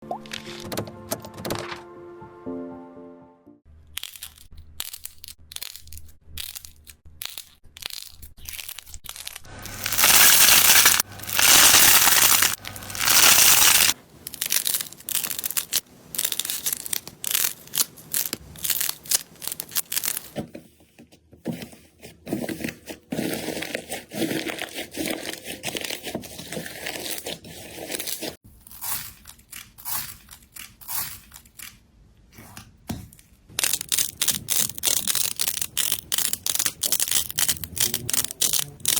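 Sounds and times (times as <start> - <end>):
slime squished by hand: 7.3 - 14.0.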